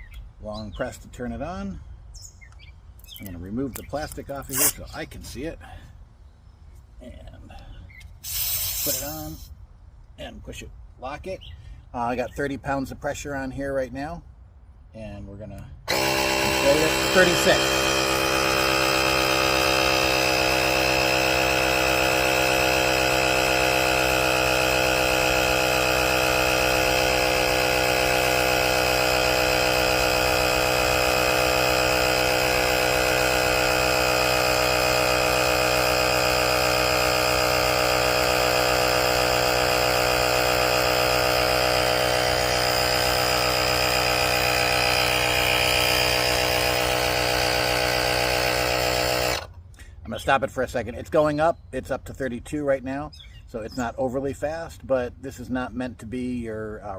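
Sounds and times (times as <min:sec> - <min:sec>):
air compressor buzzing: 0:04.4 - 0:04.9, 0:08.1 - 0:09.6, 0:15.9 - 0:49.8.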